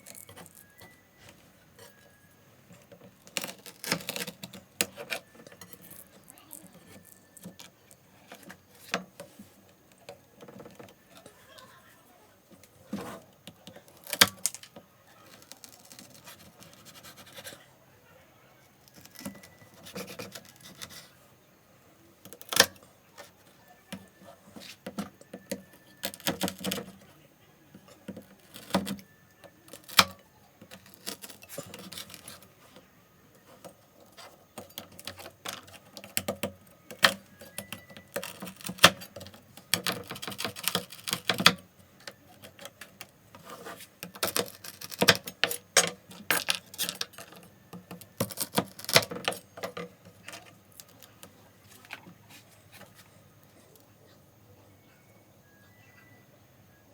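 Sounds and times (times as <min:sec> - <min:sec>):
peanuts rattling: 0:00.0 - 0:01.1, 0:02.8 - 0:08.9, 0:13.6 - 0:17.6, 0:27.9 - 0:32.8, 0:33.4 - 0:51.9.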